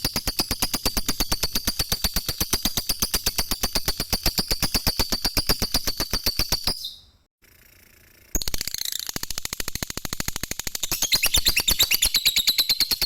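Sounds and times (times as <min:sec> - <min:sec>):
lovebird chattering trill: 0:10.8 - 0:13.0.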